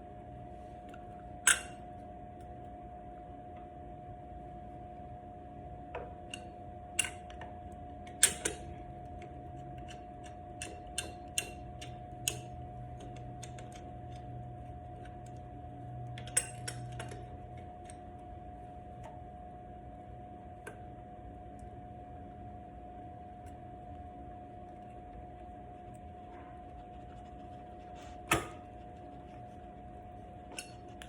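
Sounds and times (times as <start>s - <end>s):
faint steady hum: 0.0s - 31.0s.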